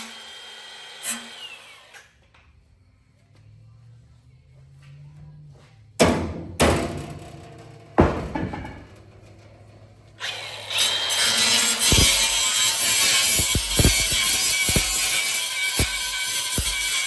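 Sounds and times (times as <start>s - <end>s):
loud strikes on steel plate: 6.0s - 9.0s, 11.8s - 17.0s.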